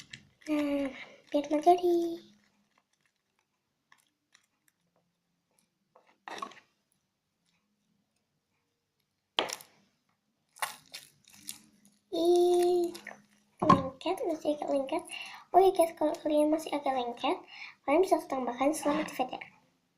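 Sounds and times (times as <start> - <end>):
slime crackling: 0.0 - 5.1, 10.5 - 15.1.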